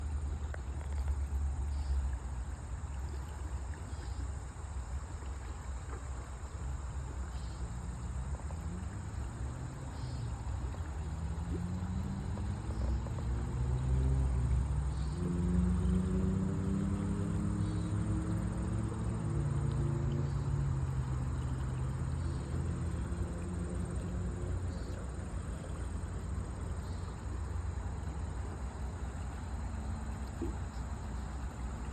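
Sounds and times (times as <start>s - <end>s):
insects trilling and chirping: 0.0s - 31.9s
steady low rumble: 16.9s - 31.9s.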